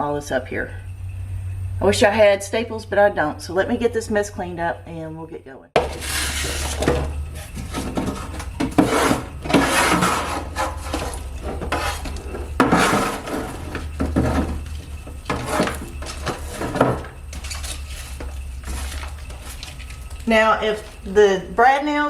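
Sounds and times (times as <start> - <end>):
steady low hum: 0.0 - 22.0
debris scraping and clattering: 5.8 - 21.3.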